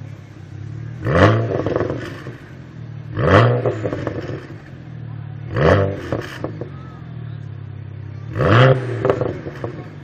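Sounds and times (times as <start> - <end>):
car engine idling and revving: 0.0 - 10.0
exhaust pops: 3.1 - 4.7, 8.3 - 10.0.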